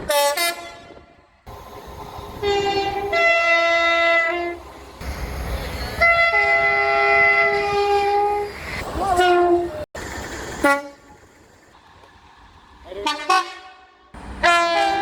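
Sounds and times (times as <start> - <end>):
train two-tone horn: 0.0 - 1.1, 2.4 - 4.6, 6.0 - 8.5, 13.0 - 15.0
train running noise: 0.0 - 15.0.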